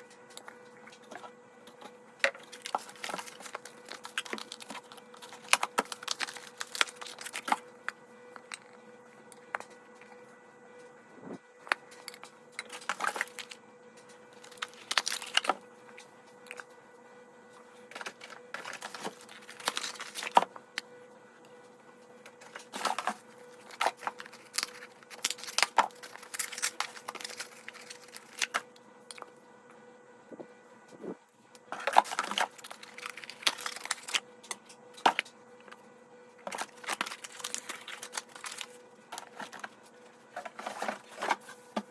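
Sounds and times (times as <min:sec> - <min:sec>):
faint steady hum: 0:00.0 - 0:41.9
wrapping crinkling and tearing: 0:02.3 - 0:07.7, 0:11.7 - 0:13.6, 0:14.3 - 0:16.6, 0:17.8 - 0:20.5, 0:22.3 - 0:29.2, 0:31.8 - 0:35.8, 0:36.4 - 0:41.8.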